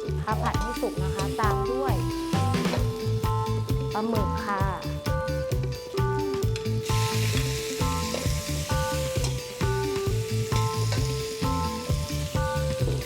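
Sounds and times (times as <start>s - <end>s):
squid sizzling in hot oil: 6.8s - 13.0s.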